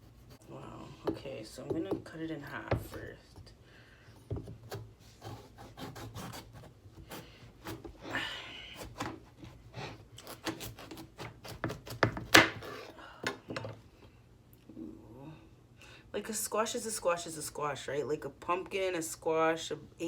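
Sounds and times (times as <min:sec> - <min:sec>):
knife scraping: 0:00.0 - 0:00.6, 0:04.6 - 0:07.9, 0:08.8 - 0:13.0
knife cutting squash on board: 0:00.0 - 0:03.4, 0:04.2 - 0:08.2, 0:08.8 - 0:13.6.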